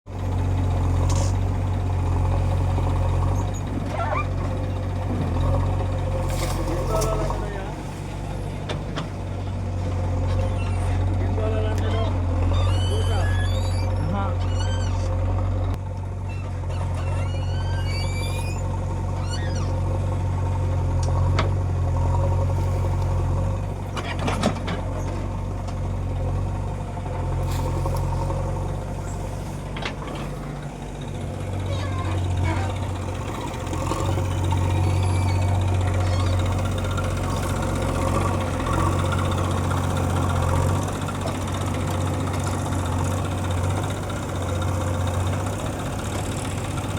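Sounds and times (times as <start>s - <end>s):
diesel engine humming: 0.0s - 46.9s
squeaky chirp: 12.5s - 15.0s.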